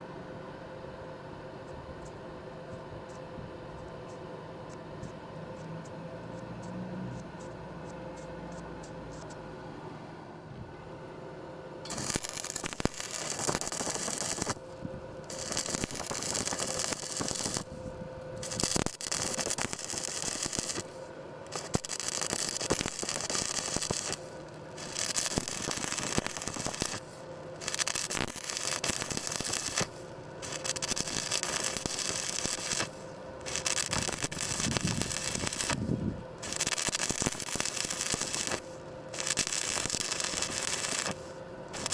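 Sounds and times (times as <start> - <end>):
faint steady hum: 0.0 - 41.9
arc welding crackling: 11.9 - 41.9.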